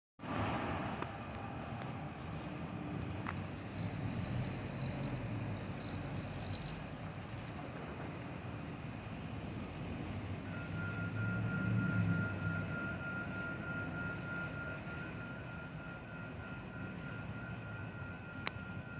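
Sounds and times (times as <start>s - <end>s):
crickets trilling: 0.2s - 18.9s.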